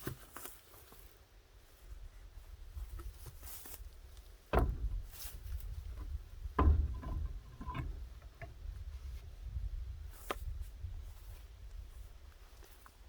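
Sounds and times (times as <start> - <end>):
sharp knocks: 4.5 - 8.6
light clicks and clanks: 4.5 - 9.2.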